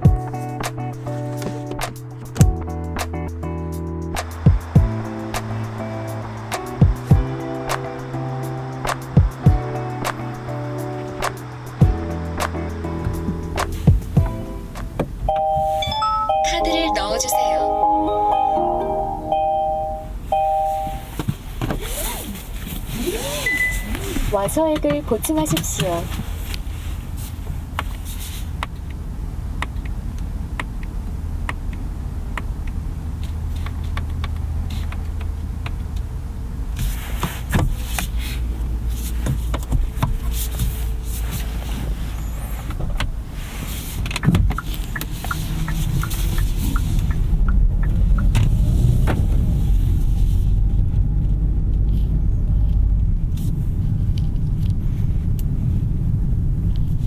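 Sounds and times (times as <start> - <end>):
road and tyre rumble: 0.0 - 16.1, 18.6 - 57.0.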